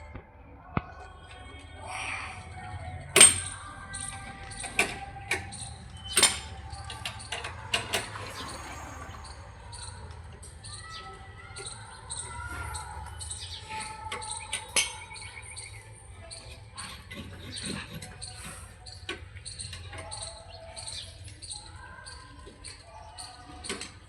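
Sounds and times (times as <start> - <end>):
metal tools knocking and clinking: 3.1 - 8.7.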